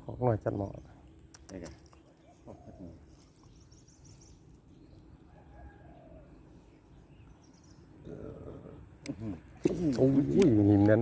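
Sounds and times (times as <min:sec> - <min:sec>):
faint bird calls: 0:00.0 - 0:11.0
bird cooing: 0:02.1 - 0:03.5, 0:05.3 - 0:06.8, 0:08.0 - 0:10.8.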